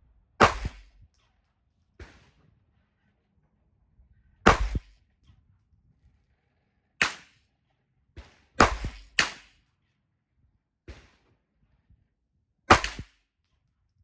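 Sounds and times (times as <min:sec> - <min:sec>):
pistol shots: 0:00.4 - 0:01.0, 0:04.5 - 0:04.9, 0:07.0 - 0:07.3, 0:08.6 - 0:09.5, 0:12.7 - 0:13.1.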